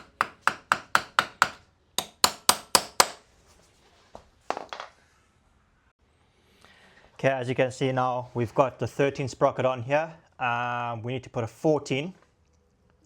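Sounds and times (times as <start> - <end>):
hammer striking metal: 0.0 - 3.2.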